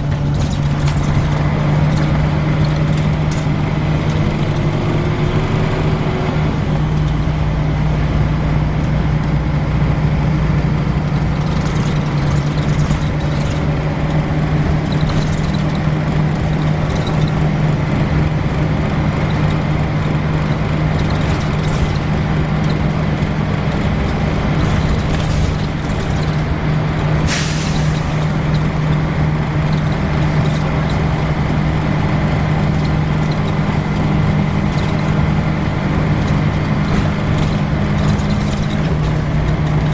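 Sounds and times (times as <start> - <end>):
bus diesel engine running: 0.0 - 39.9.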